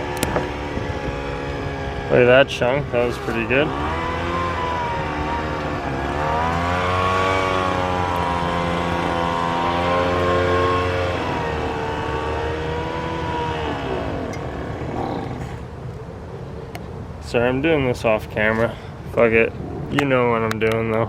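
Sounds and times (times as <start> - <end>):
car engine running: 0.0 - 15.8.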